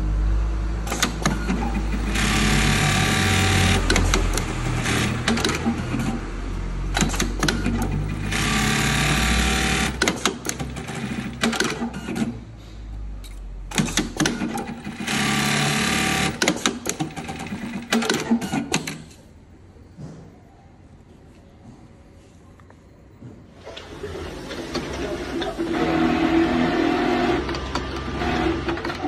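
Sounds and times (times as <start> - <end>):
sewing machine stitching: 0.9 - 6.3, 6.9 - 12.4, 13.7 - 19.1, 23.6 - 29.0
clattering mechanism clicks: 6.9 - 8.9.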